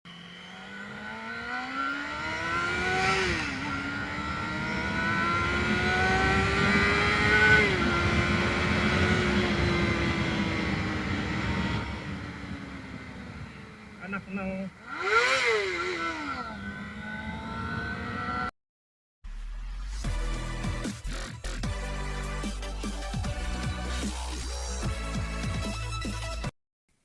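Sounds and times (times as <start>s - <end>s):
motorcycle engine accelerating: 0.1s - 18.5s.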